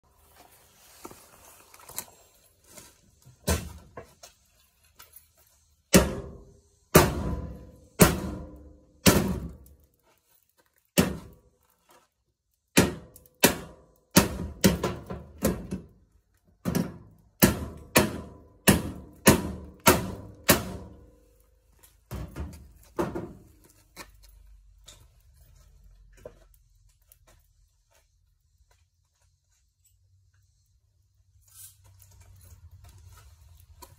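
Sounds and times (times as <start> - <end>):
heavy knocks on metal: 5.9 - 9.6, 16.7 - 21.0.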